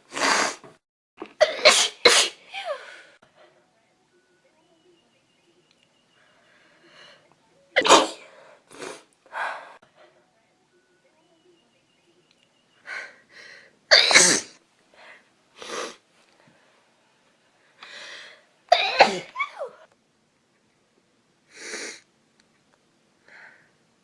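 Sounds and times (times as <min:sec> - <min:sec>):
woman sneezing loudly: 0:01.4 - 0:02.8, 0:07.8 - 0:09.0, 0:13.9 - 0:14.6, 0:18.7 - 0:19.8.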